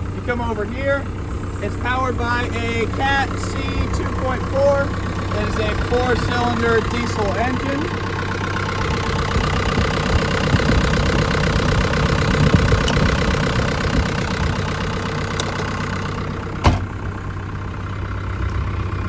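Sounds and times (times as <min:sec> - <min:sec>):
diesel engine idling: 0:00.0 - 0:19.0
sharp knock: 0:16.6 - 0:16.8.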